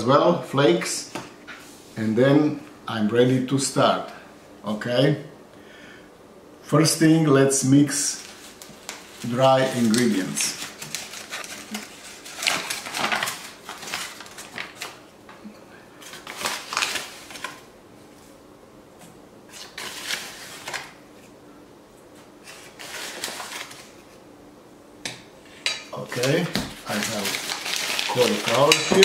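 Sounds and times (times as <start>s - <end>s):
utensils clinking against mixing bowl: 28.5s - 29.0s.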